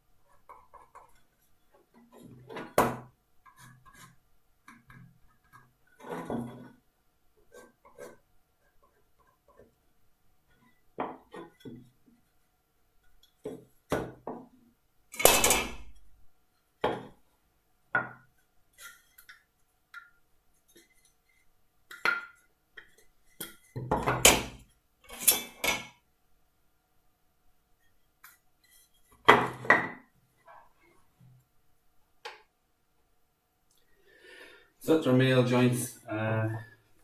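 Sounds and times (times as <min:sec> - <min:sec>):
wooden pieces knocking on workbench: 0:23.8 - 0:24.6, 0:29.2 - 0:30.1.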